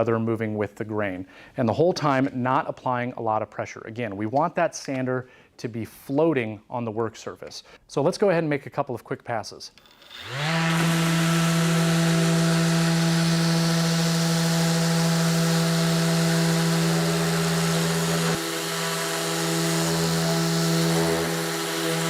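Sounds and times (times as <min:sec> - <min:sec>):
electric sander on wood: 0:10.0 - 0:22.0
dust extractor drawing air: 0:10.2 - 0:22.0.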